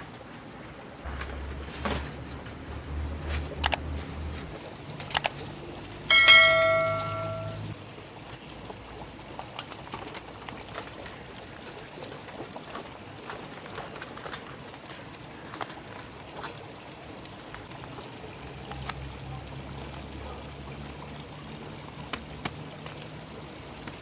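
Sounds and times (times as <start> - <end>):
metal object ringing: 6.1 - 7.7.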